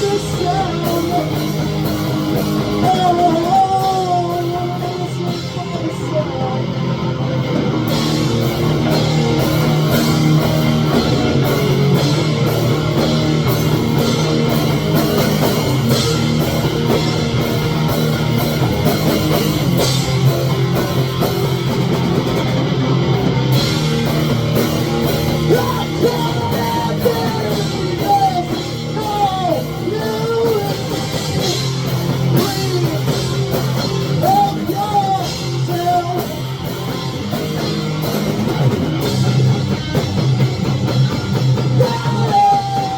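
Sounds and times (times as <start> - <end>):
bending guitar lead line: 0.0 - 42.9
rock music: 0.0 - 42.9.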